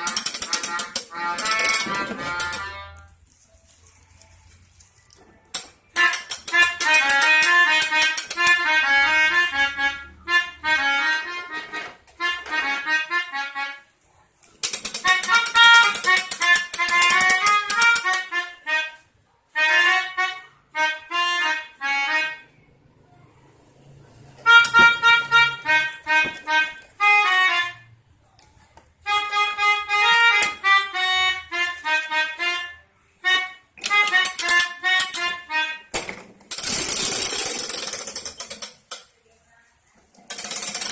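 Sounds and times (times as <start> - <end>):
melodica playing reedy notes: 0.0 - 3.2, 5.9 - 13.9, 15.0 - 22.5, 24.4 - 27.9, 29.0 - 35.9.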